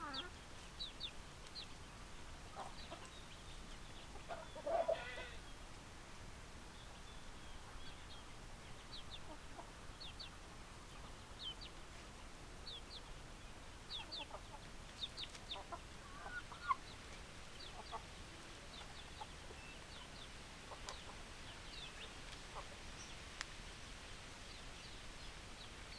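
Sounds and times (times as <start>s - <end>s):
chickens clucking: 0.0s - 1.8s, 2.4s - 5.5s, 8.9s - 11.8s, 13.9s - 22.8s.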